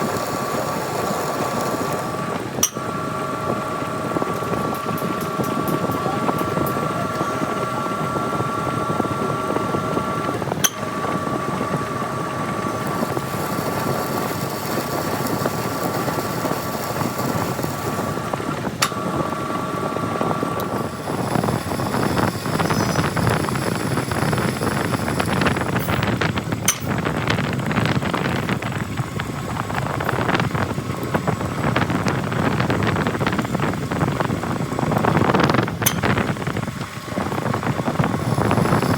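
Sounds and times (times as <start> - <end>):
metal lathe whine: 0.0 - 38.9.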